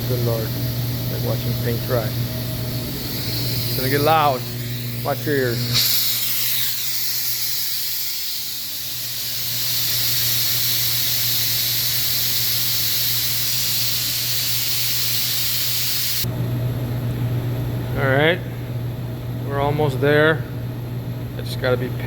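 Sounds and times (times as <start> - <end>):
low machinery hum: 0.0 - 13.2, 16.2 - 22.0
compressed air hissing: 0.0 - 16.3.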